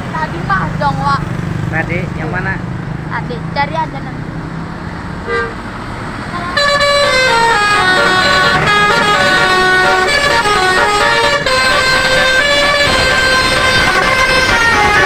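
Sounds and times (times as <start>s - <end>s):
bus air horn playing a tune: 5.3s - 5.6s, 6.3s - 15.0s.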